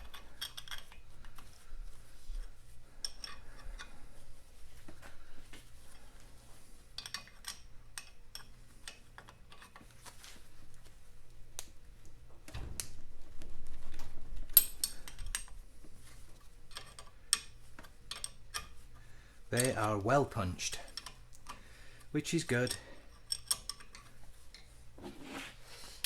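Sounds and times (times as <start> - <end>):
spanner and metal parts clinking: 0.0 - 1.5, 3.0 - 3.9, 6.9 - 9.8, 16.7 - 18.8, 19.5 - 21.6, 22.3 - 24.7.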